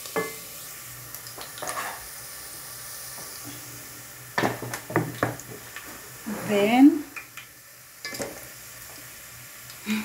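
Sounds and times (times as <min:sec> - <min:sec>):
onions sizzling in oil: 0:00.0 - 0:10.0
spoon scraping a pan: 0:01.6 - 0:02.1, 0:06.3 - 0:06.8.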